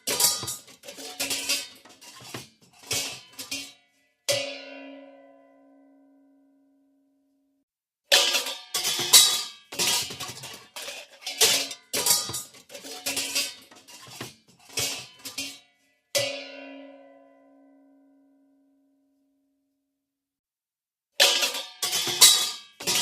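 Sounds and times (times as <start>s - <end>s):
pots and pans clattering: 0.0s - 3.9s, 8.1s - 15.7s, 21.2s - 23.0s.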